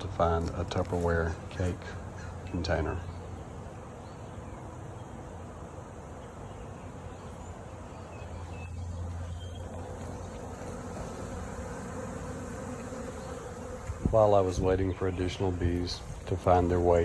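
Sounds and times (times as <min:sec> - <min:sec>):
bees buzzing: 0:05.6 - 0:17.0.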